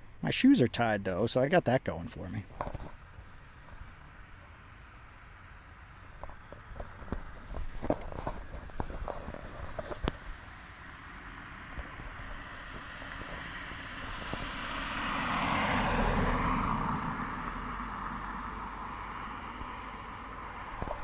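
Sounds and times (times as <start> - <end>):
car driving past: 10.2 - 21.0.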